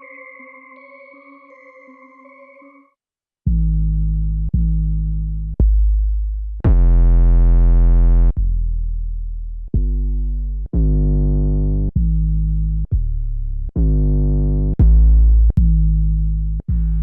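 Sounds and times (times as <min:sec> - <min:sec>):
deep bass booms: 0:03.5 - 0:17.0.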